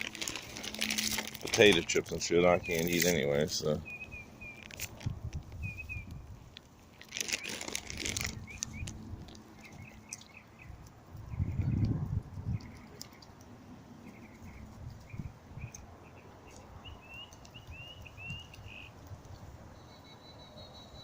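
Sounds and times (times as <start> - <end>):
bird chirping: 1.8 - 4.8, 5.6 - 6.2, 7.2 - 13.3, 14.0 - 19.0, 19.7 - 21.0.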